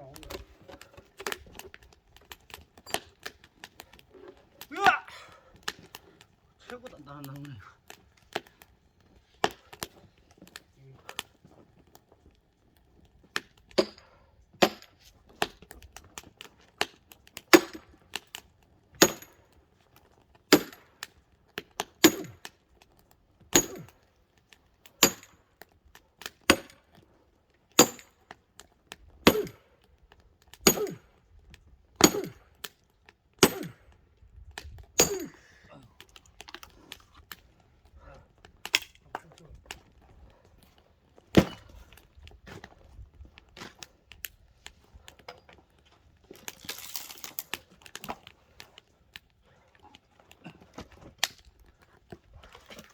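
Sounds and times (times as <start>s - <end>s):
axe striking log: 14.6s - 15.5s, 17.6s - 17.8s, 19.0s - 19.3s, 20.5s - 20.8s, 22.0s - 22.4s, 23.6s - 23.9s, 25.0s - 25.3s, 26.5s - 26.8s, 27.8s - 28.1s, 29.2s - 29.6s, 30.6s - 31.0s, 32.0s - 32.4s, 33.4s - 33.8s, 35.0s - 35.4s, 41.3s - 41.7s.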